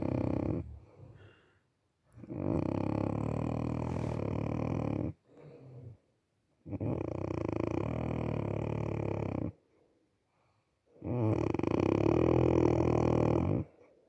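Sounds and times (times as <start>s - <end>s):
person snoring: 0.0s - 1.4s, 3.5s - 4.8s.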